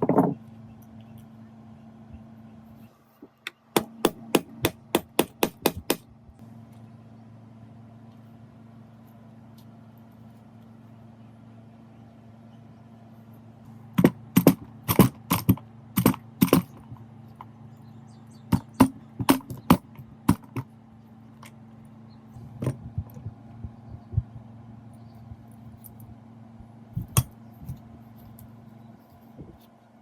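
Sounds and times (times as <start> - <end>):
steady low hum: 0.0 - 30.0
sharp knocks on a workpiece: 3.8 - 6.1, 14.0 - 16.8, 18.5 - 20.7.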